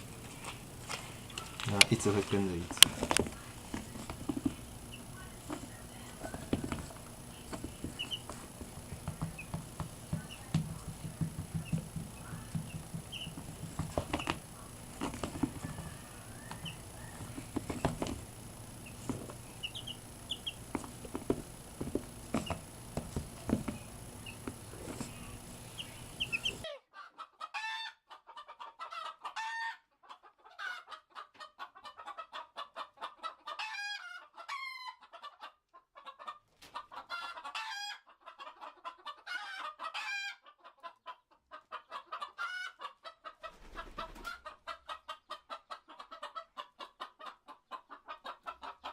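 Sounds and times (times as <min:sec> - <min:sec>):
background noise: 0:00.0 - 0:48.9
chickens clucking: 0:00.0 - 0:48.9.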